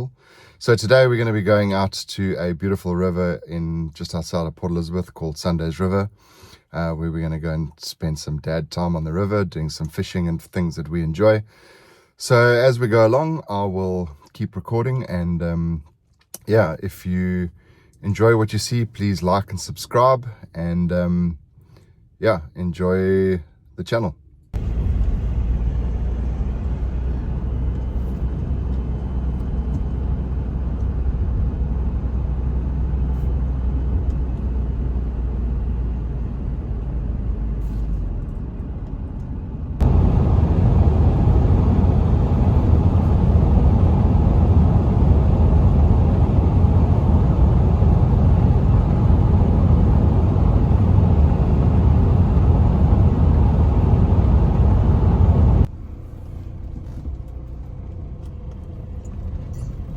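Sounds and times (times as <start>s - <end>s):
vehicle engine and road rumble: 24.5s - 59.9s.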